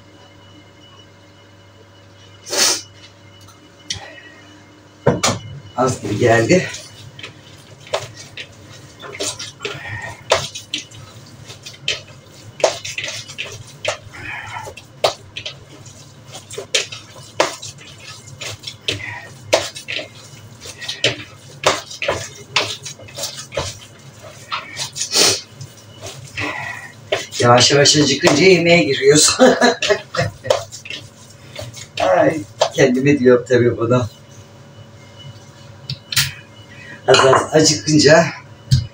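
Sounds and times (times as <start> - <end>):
hands kneading wet meat: 5.8 - 33.6
dishes clinking: 37.1 - 37.6.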